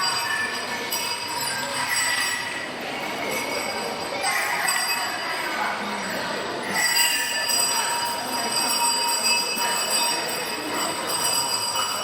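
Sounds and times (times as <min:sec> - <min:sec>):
cowbells ringing: 0:00.0 - 0:02.8, 0:06.0 - 0:12.0.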